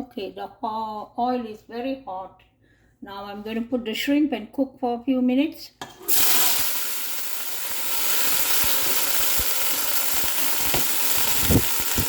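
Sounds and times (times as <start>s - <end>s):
shrimp shells sizzling in hot oil: 6.0s - 12.0s.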